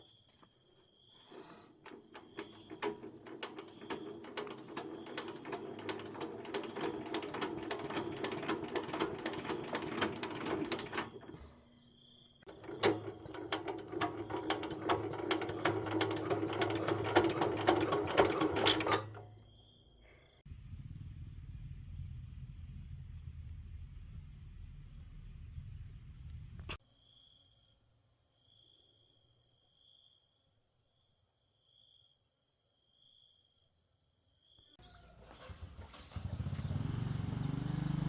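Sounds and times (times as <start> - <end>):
small machine clattering: 1.3 - 11.7, 12.4 - 19.4.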